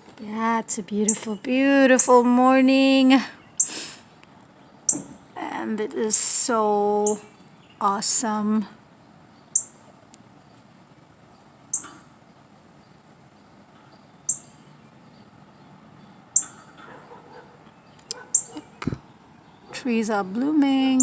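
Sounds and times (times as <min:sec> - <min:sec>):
bird chip calls: 0:03.4 - 0:04.0, 0:09.4 - 0:09.9, 0:11.7 - 0:12.1, 0:13.8 - 0:21.0.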